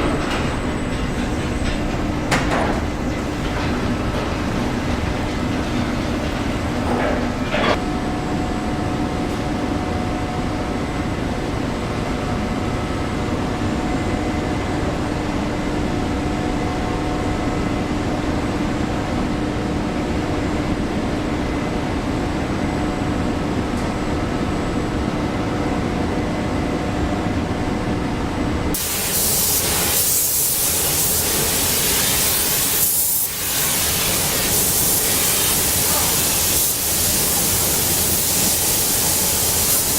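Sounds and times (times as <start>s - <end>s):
factory machinery hum: 0.0s - 39.9s
bright hiss: 28.8s - 39.9s.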